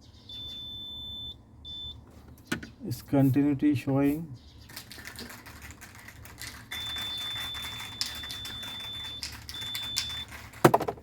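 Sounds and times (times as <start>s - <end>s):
multimeter continuity beeps: 0.2s - 2.0s, 6.7s - 10.4s
probes clicking and tapping: 4.7s - 11.0s.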